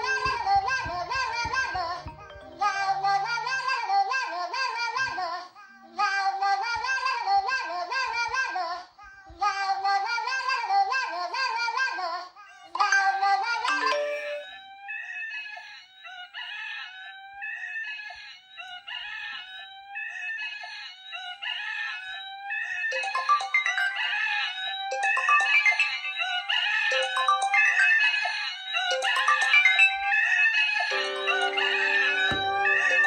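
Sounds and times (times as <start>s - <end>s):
electronic ringtone: 0.0s - 4.0s, 12.8s - 15.4s, 22.1s - 33.0s
rooster crowing alarm: 0.0s - 5.2s, 13.4s - 33.0s.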